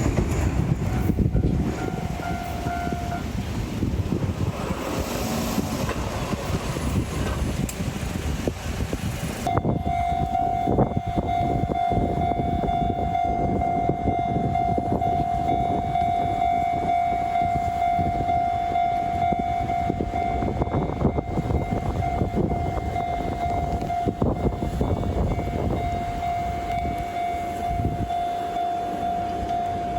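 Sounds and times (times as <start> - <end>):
freight train wheels clattering: 0.0 - 12.8
crossing warning signal tone: 0.1 - 3.9, 9.4 - 29.9.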